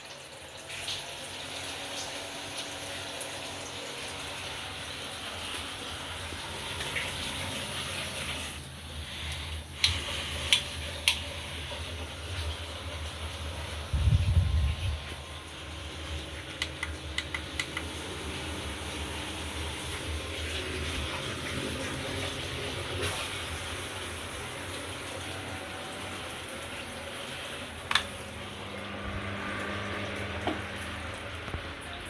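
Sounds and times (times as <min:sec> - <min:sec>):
ceiling fan running: 0:00.1 - 0:32.0.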